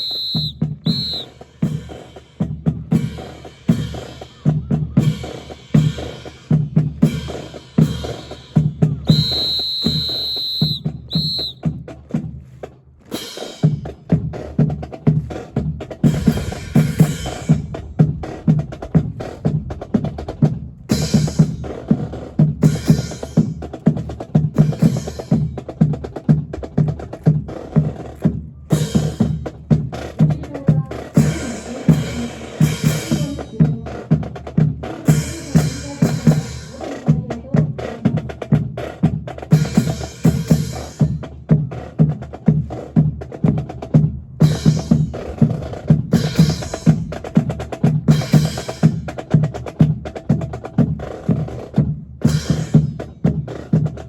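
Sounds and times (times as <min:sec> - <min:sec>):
snare and bass drum cadence: 0:00.0 - 0:54.0
cymbal crashes: 0:16.1 - 0:18.6.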